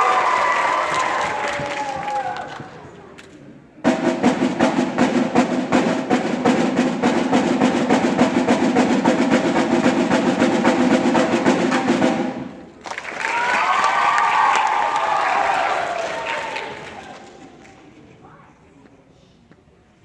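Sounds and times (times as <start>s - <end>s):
crowd cheering and applause: 0.0s - 3.0s, 12.7s - 17.8s
drum roll: 3.8s - 17.0s.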